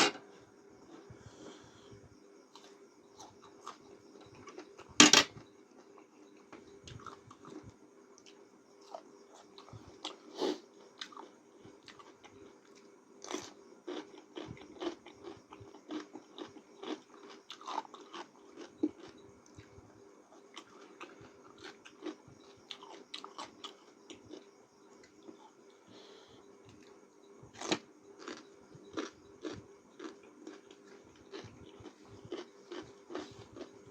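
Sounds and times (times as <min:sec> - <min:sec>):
person chewing noodles: 0:06.9 - 0:19.7, 0:20.5 - 0:24.4, 0:27.6 - 0:33.9.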